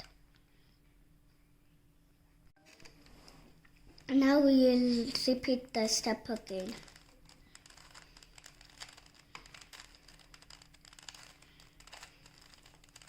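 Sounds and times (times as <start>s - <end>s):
puzzle cube clicking as turned: 6.8s - 13.0s.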